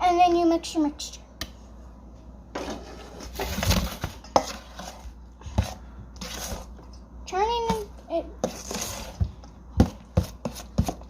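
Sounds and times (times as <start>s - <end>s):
spoon scraping in bowl: 4.2s - 6.8s, 8.4s - 9.2s.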